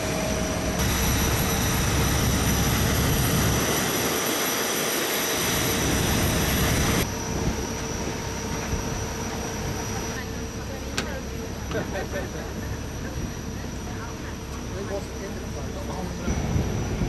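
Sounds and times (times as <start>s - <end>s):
high steady whine: 0.0s - 10.2s.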